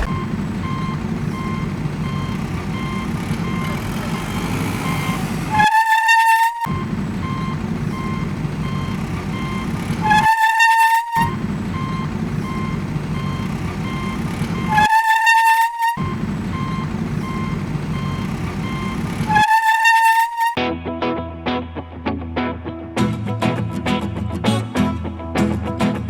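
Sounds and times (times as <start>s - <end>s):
reversing alarm beeps: 0.0s - 20.6s
truck engine rumble: 0.0s - 20.6s
truck horn blast: 1.4s - 6.9s, 8.1s - 11.9s, 12.5s - 20.6s.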